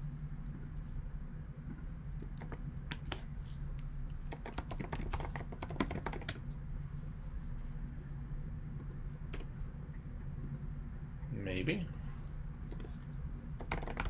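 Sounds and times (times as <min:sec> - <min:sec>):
steady low hum: 0:00.0 - 0:14.0
keyboard typing: 0:02.2 - 0:03.2, 0:04.3 - 0:06.4, 0:13.6 - 0:14.0.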